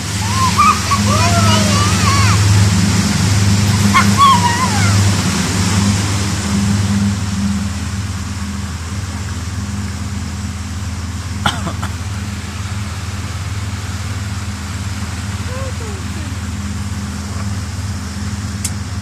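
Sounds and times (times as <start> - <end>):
water hissing: 0.0 - 6.4
boat motor droning: 0.0 - 19.0
wind: 0.0 - 19.0.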